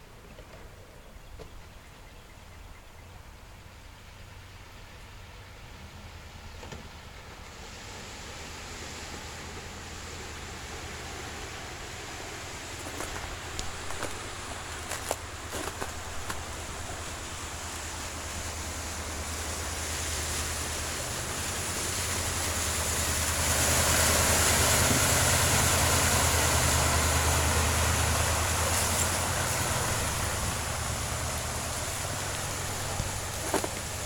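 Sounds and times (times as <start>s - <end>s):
water splashing from wheels: 3.4s - 34.0s
truck engine drone: 4.3s - 34.0s.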